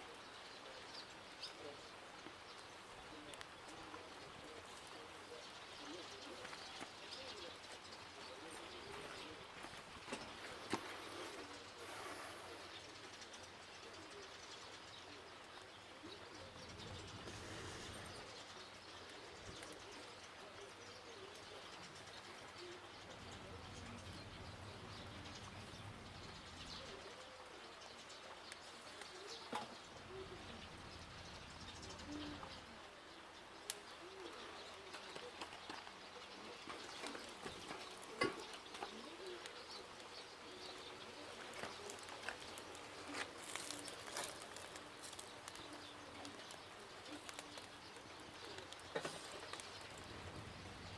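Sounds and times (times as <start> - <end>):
background hiss: 0.0 - 50.9
bird cooing: 29.1 - 32.8, 36.3 - 50.9.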